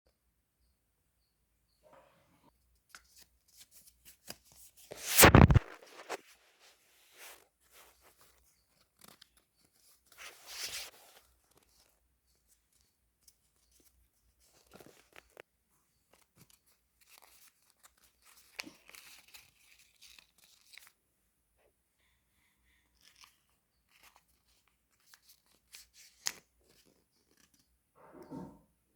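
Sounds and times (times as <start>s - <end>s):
paper rustling and crinkling: 3.0s - 15.4s, 16.0s - 21.0s.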